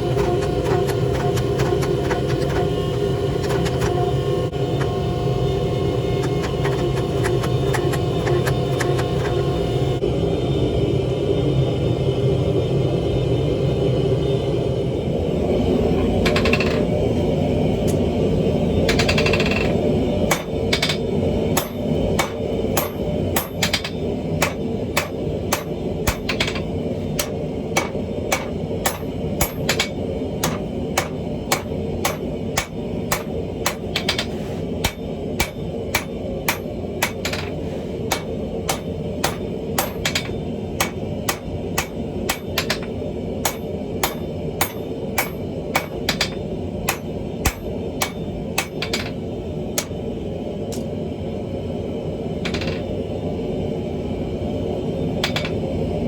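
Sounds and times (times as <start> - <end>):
low background roar: 0.0 - 56.0
hammer striking steel on anvil: 18.9 - 49.2, 49.8 - 50.0, 55.2 - 55.6.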